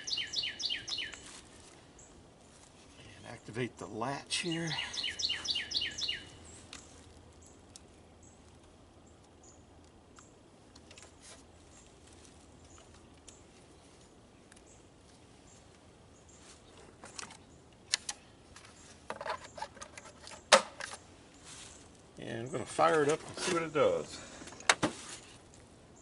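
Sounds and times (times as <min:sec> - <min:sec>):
sharp clicks and small knocks: 0:16.8 - 0:21.0.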